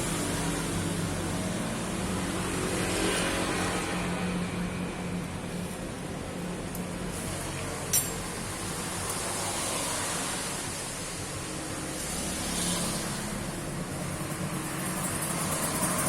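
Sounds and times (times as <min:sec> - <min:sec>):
mechanical hum and hiss: 0:00.0 - 0:16.0.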